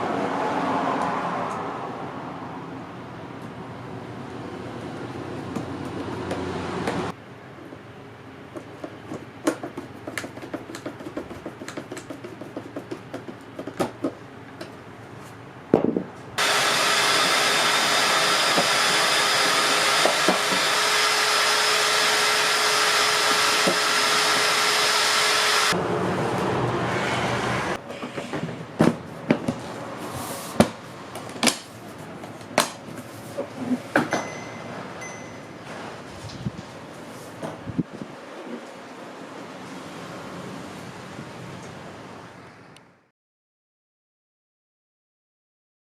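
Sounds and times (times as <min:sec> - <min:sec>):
small electric motor running: 0:16.4 - 0:25.8.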